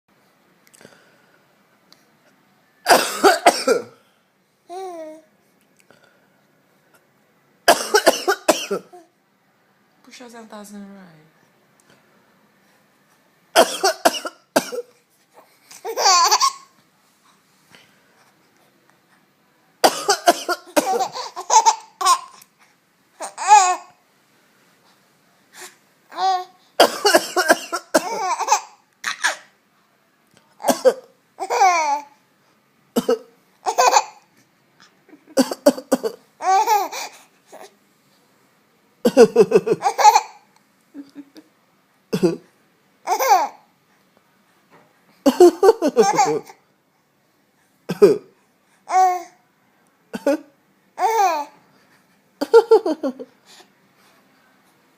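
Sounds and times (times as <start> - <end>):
man coughing: 2.9 - 4.0, 7.7 - 8.9, 13.6 - 14.9, 19.8 - 21.2, 26.8 - 28.4, 30.6 - 31.1, 33.0 - 33.3, 35.3 - 36.2, 42.1 - 42.5, 45.3 - 46.5, 47.9 - 48.4, 50.2 - 50.5
baby laughing: 15.4 - 16.7, 20.7 - 22.4, 23.2 - 24.0, 27.9 - 29.5, 31.4 - 32.1, 33.6 - 34.3, 36.4 - 37.7, 39.1 - 40.4, 43.0 - 43.6, 45.3 - 46.6, 51.0 - 51.5.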